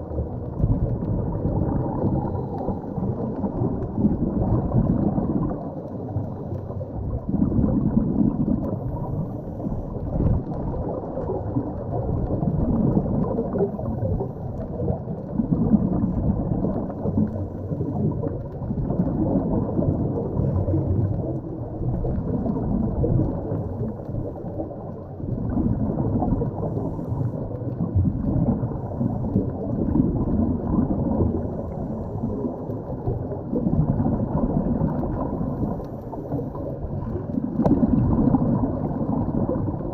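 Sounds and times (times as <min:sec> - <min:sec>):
underwater rumble of moving water: 0:00.0 - 0:39.9.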